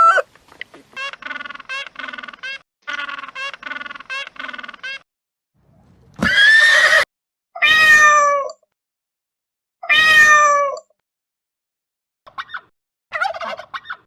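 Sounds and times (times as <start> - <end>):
cat meowing: 7.6 - 8.6, 9.8 - 10.9.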